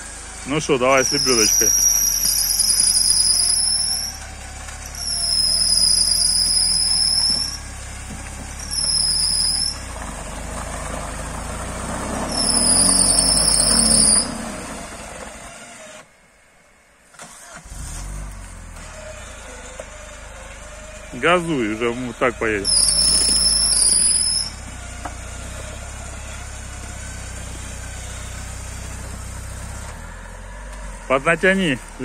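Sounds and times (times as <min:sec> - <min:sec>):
electric winch whining: 0:00.0 - 0:08.0, 0:18.8 - 0:30.4
vehicle engine idling: 0:00.0 - 0:32.0.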